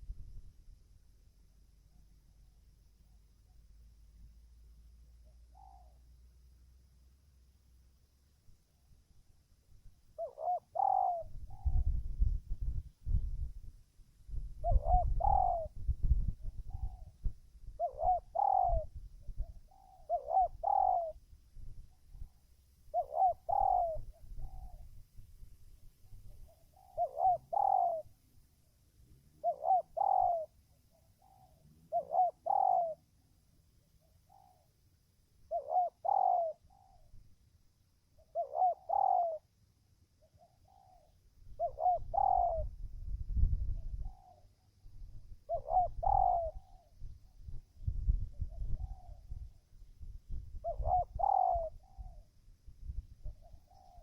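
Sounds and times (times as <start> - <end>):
dove cooing: 5.2 - 6.1, 10.2 - 13.2, 14.6 - 21.2, 22.1 - 24.9, 26.1 - 28.4, 29.0 - 33.2, 34.0 - 34.8, 35.4 - 37.2, 38.2 - 39.5, 40.2 - 44.7, 45.4 - 47.1, 48.1 - 49.6, 50.5 - 52.3, 53.2 - 54.0.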